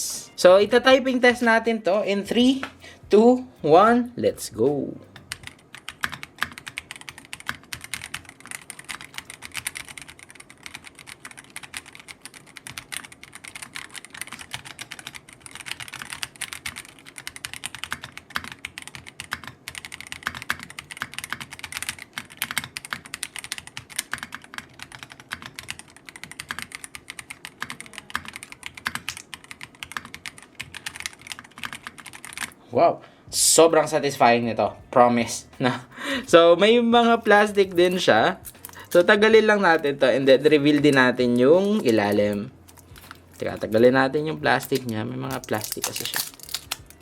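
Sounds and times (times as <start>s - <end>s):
fast mechanical keyboard typing: 5.2s - 32.6s, 36.9s - 47.0s.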